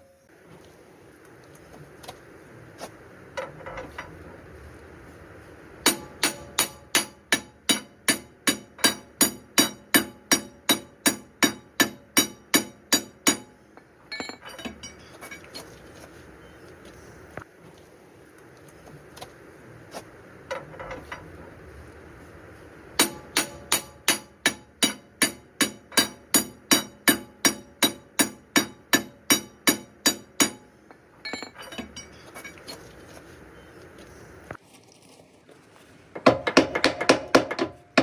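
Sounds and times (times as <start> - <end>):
tools clinking and knocking: 3.4 - 4.2, 13.2 - 15.8, 20.5 - 21.3, 30.2 - 33.2, 36.2 - 38.0
hammer striking metal: 5.8 - 13.5, 23.0 - 30.6, 36.2 - 38.0.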